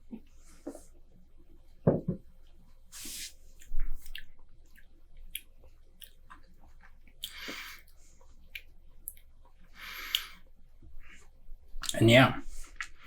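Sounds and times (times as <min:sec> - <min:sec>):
wet mouth clicks and lip smacks: 0:03.6 - 0:10.4.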